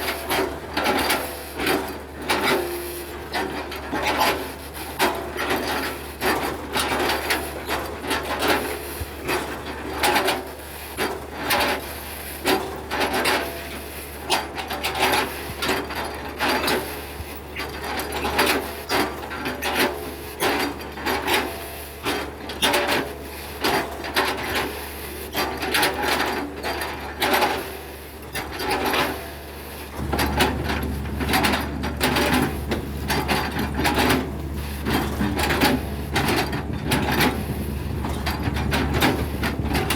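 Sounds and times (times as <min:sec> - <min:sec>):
excavator diesel engine running: 0:15.7 - 0:39.9.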